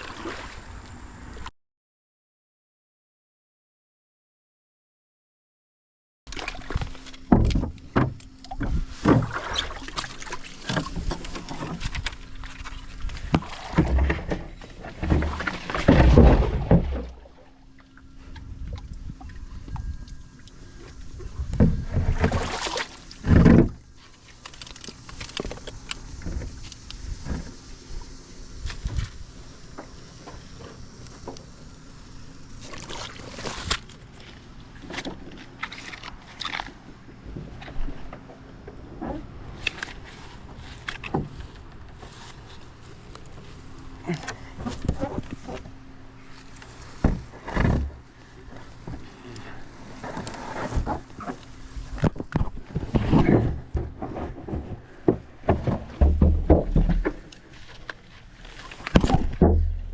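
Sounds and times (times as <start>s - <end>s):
paddle splashing in water: 8.7s - 17.5s, 21.8s - 24.4s.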